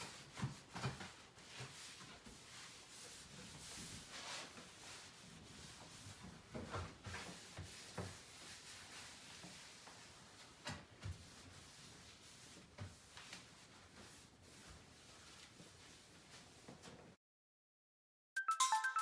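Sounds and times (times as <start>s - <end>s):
soft rub: 0.0s - 17.1s.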